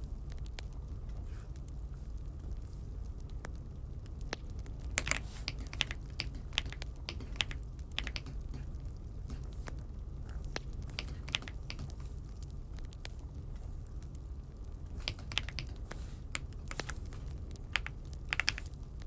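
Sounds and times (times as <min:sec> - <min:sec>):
steady low hum: 0:00.0 - 0:19.0
mechanical keyboard clacking: 0:04.9 - 0:09.6, 0:10.8 - 0:12.0, 0:15.0 - 0:18.8.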